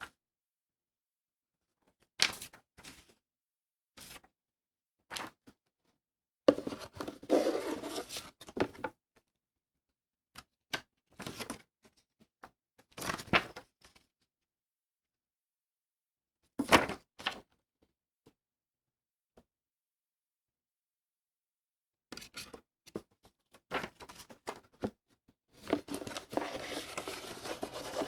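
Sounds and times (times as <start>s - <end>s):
packaging knocks and scrapes: 6.5s - 8.2s, 25.7s - 28.0s
rustling packaging: 25.8s - 28.0s.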